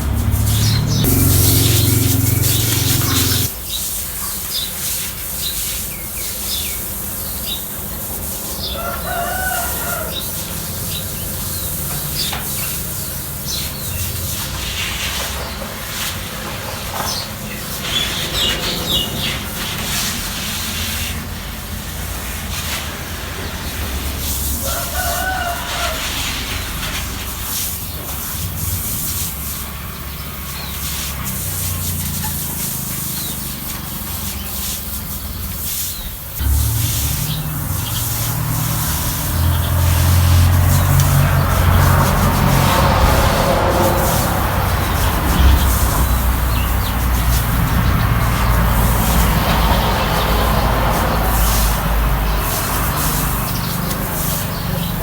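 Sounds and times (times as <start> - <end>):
rooster crowing: 1.0 - 3.5, 8.8 - 10.3, 24.6 - 26.2.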